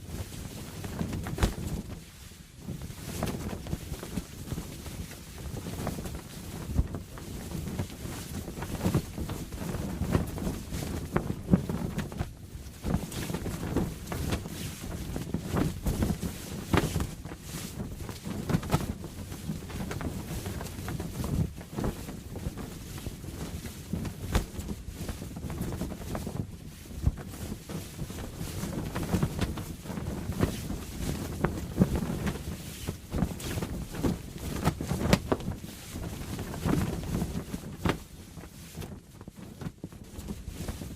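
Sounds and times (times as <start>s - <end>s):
gusty wind: 0.0s - 40.9s
sail flapping and snapping: 0.0s - 40.9s.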